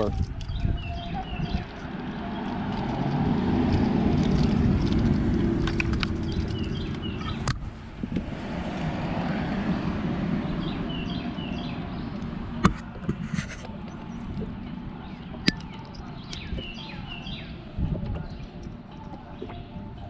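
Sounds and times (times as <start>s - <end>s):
birds chirping: 0.0s - 7.6s, 8.8s - 12.9s, 13.7s - 20.0s
low steady rumble: 0.0s - 20.0s.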